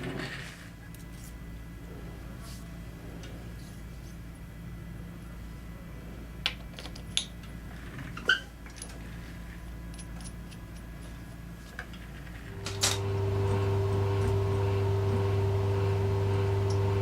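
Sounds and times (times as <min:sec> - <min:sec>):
metallic clinks of small parts: 0:08.6 - 0:11.2
electric machine humming: 0:12.5 - 0:17.0.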